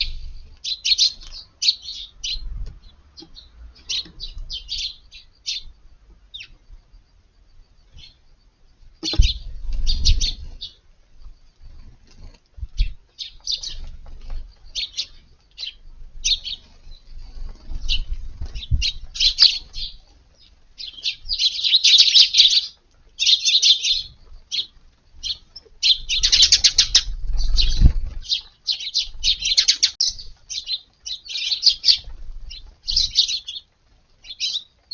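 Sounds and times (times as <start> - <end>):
sparrows chirping: 0.0 - 34.9
low rustling and thudding: 9.0 - 10.7, 16.2 - 20.0.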